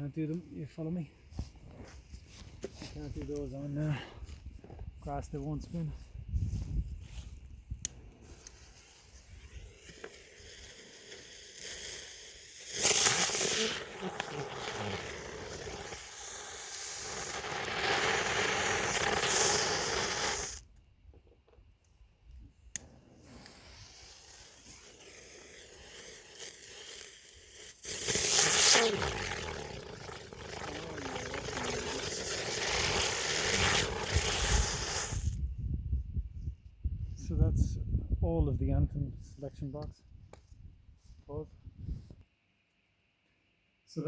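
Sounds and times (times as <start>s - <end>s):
spinner fireworks hissing: 8.2s - 20.6s, 22.8s - 35.4s.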